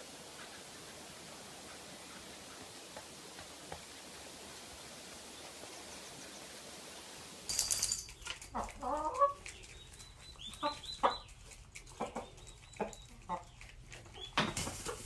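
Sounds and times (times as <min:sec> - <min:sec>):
chicken clucking: 0:08.5 - 0:15.0.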